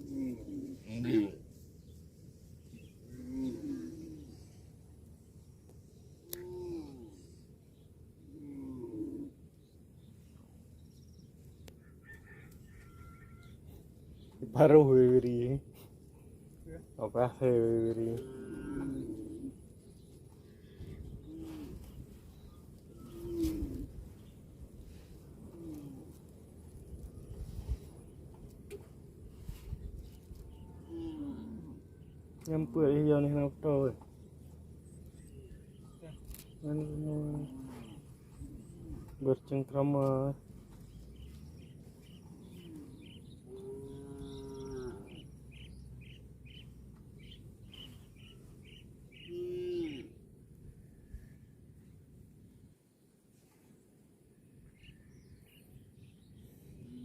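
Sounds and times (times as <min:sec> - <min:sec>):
dove cooing: 0:00.0 - 0:01.3, 0:03.1 - 0:04.4, 0:08.3 - 0:09.4, 0:18.2 - 0:19.7, 0:20.8 - 0:22.2, 0:22.9 - 0:24.3, 0:25.0 - 0:26.2, 0:30.7 - 0:32.1, 0:36.6 - 0:39.2, 0:47.2 - 0:50.2
cow mooing: 0:18.2 - 0:19.3, 0:42.5 - 0:45.3, 0:49.2 - 0:50.2
bird chirping: 0:30.1 - 0:50.1.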